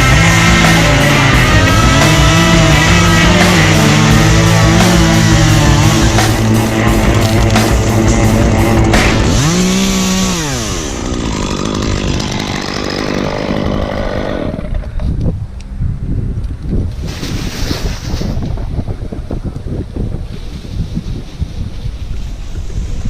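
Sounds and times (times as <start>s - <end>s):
rock music: 0.0s - 11.1s
chainsaw revving: 0.0s - 15.0s
wind buffeting microphone: 1.2s - 23.0s.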